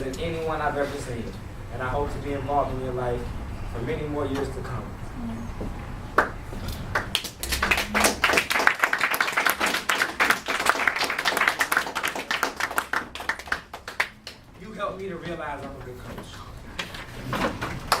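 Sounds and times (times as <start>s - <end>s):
small group clapping: 6.2s - 14.6s, 16.8s - 18.0s.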